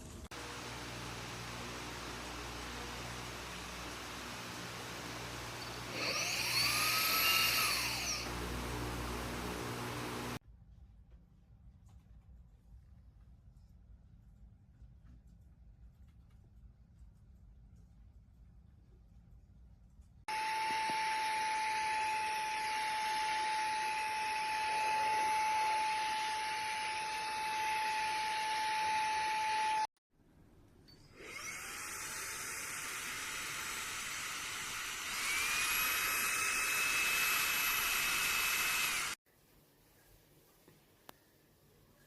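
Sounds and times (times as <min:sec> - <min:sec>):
handheld vacuum cleaner whining: 0:00.3 - 0:10.4, 0:20.3 - 0:29.9, 0:31.2 - 0:39.2.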